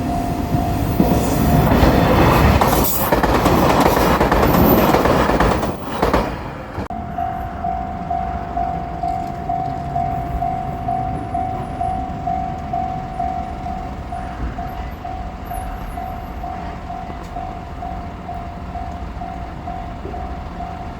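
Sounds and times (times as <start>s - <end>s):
level-crossing alarm: 0.0s - 6.2s, 6.9s - 20.9s
train clattering past: 0.0s - 20.9s.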